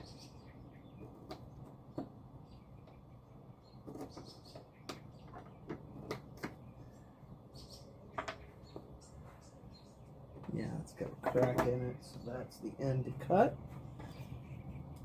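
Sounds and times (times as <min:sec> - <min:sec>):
wooden pieces clicking and knocking: 0:08.2 - 0:08.8, 0:11.1 - 0:11.8.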